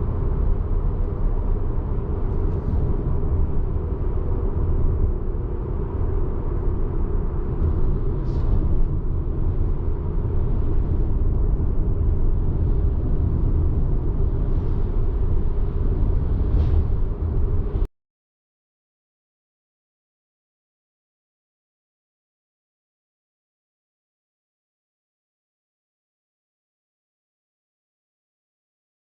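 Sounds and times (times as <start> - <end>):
car driving rumble: 0.0 - 17.9.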